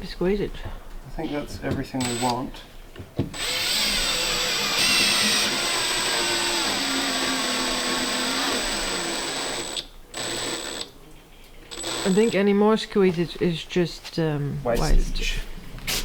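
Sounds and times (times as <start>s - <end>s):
small motor whining: 3.4s - 10.9s.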